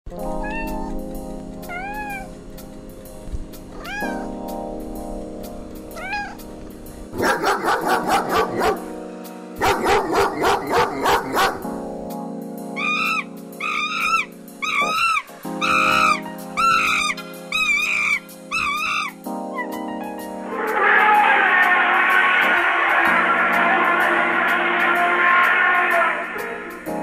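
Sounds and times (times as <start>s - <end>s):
background music: 0.1s - 27.0s
cat meowing: 0.3s - 1.0s, 1.7s - 2.3s, 3.7s - 4.4s, 5.9s - 6.4s, 12.8s - 19.9s
rapid repeated animal calls: 12.8s - 19.8s.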